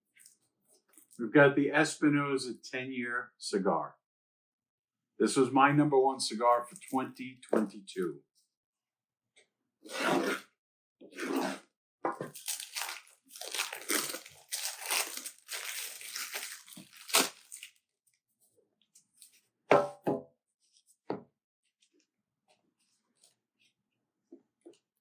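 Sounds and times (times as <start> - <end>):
packaging crinkling and tearing: 12.3 - 17.8.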